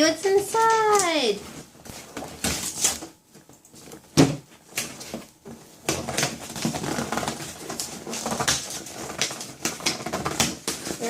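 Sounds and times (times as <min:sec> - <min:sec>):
packaging crinkling and rustling: 0:00.0 - 0:11.0
cardboard tearing: 0:02.0 - 0:03.2, 0:05.8 - 0:11.0.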